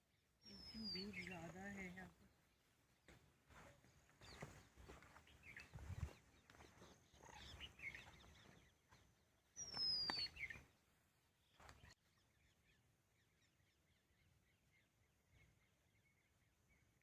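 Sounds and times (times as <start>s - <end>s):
faint bird chirps: 0.0s - 2.7s, 3.5s - 10.8s.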